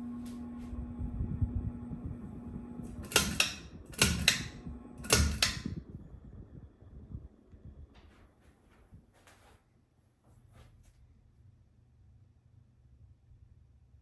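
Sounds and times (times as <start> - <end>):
ceiling fan motor humming: 0.0 - 13.9
sharp clattering clicks: 2.9 - 5.7.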